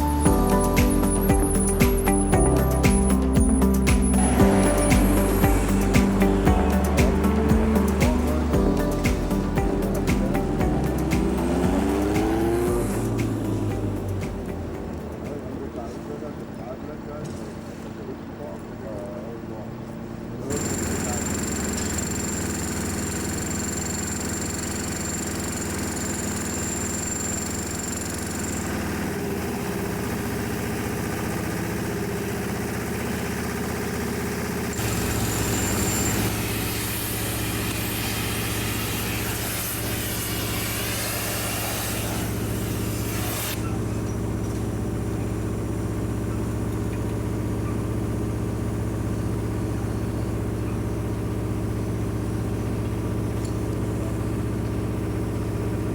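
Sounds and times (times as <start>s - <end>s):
loud hiss: 0.0s - 14.6s, 34.7s - 43.8s
engine running: 0.0s - 55.9s.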